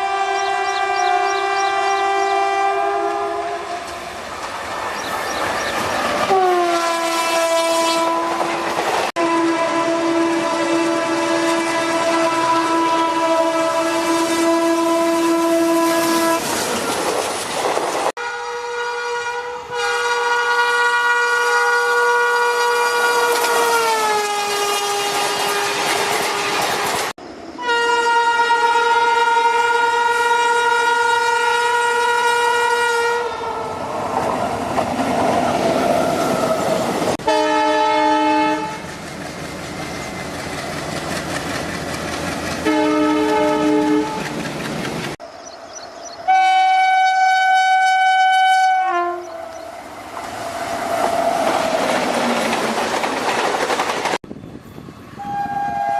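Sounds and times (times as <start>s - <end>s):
train horn blasts: 0.0s - 4.0s, 6.2s - 16.6s, 18.2s - 27.0s, 27.6s - 33.8s, 35.9s - 38.9s, 42.6s - 44.4s, 46.3s - 49.7s, 55.2s - 55.9s
wheels clattering over rail joints: 51.0s - 54.2s.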